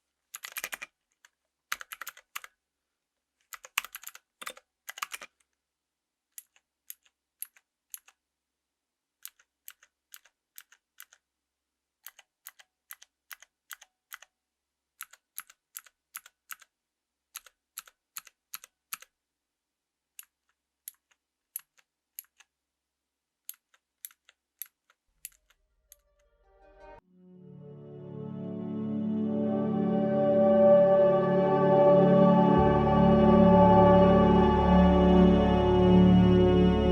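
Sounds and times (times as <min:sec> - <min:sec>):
mechanical keyboard clicks: 0:00.3 - 0:02.5, 0:03.4 - 0:05.4, 0:06.4 - 0:08.2, 0:09.2 - 0:11.2, 0:12.0 - 0:14.3, 0:15.0 - 0:16.7, 0:17.3 - 0:19.2, 0:20.2 - 0:22.5, 0:23.4 - 0:26.1.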